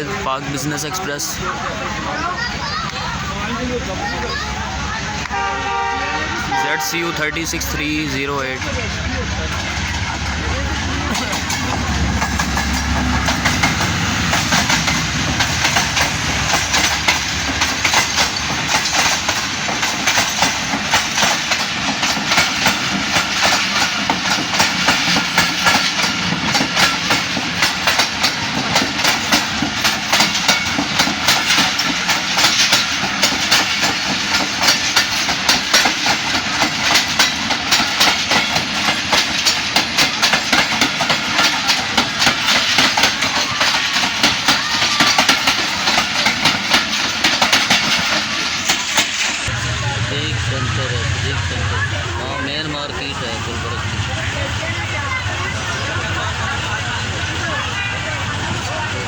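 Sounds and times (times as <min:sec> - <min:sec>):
train rumbling: 0:00.0 - 0:59.0
train wheels clickety-clack: 0:06.5 - 0:49.9.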